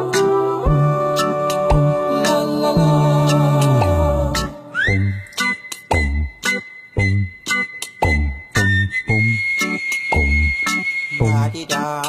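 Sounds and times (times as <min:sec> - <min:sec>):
low thumping beat: 0:01.6 - 0:04.5.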